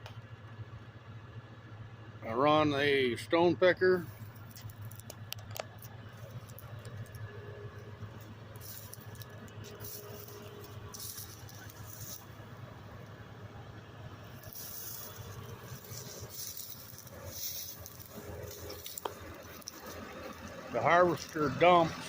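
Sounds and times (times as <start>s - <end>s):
tractor engine droning: 0.0s - 22.0s
high hiss: 14.4s - 20.3s.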